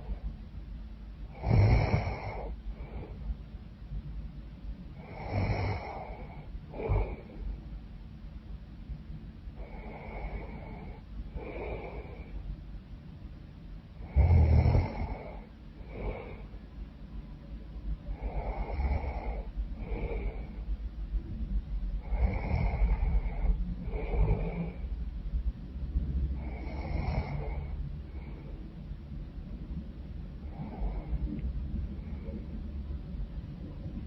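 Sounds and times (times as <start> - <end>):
woman snoring: 1.3 - 2.6, 5.0 - 7.3, 14.0 - 16.4, 18.2 - 20.4, 22.0 - 24.8, 26.4 - 27.8.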